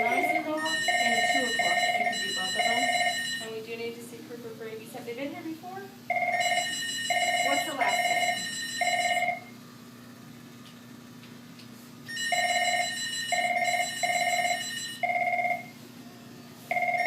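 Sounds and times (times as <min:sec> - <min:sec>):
phone ringing with two-tone beeps: 0:00.0 - 0:03.5, 0:06.1 - 0:09.5, 0:12.1 - 0:15.7, 0:16.7 - 0:17.0.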